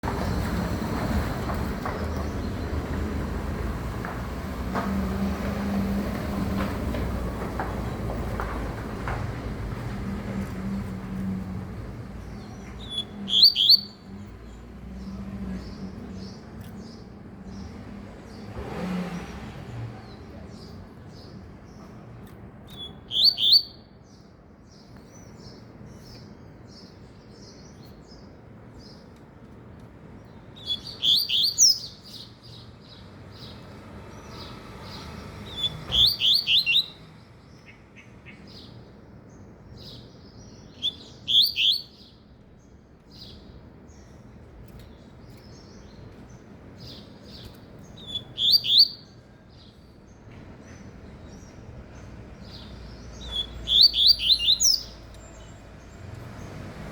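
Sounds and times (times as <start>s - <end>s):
bird song with high notes: 11.9s - 18.5s, 20.0s - 29.2s, 30.2s - 56.7s
soft bird chirps: 12.2s - 18.4s, 20.0s - 29.2s, 30.3s - 33.6s, 34.2s - 56.7s.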